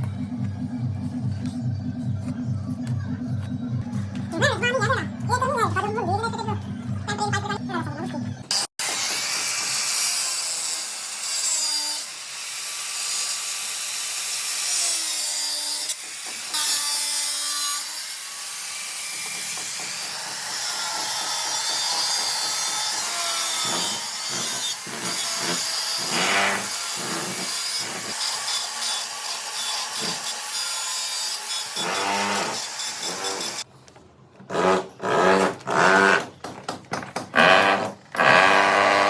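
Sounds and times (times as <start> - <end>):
power tool grinding: 8.5 - 33.7, 34.4 - 39.0.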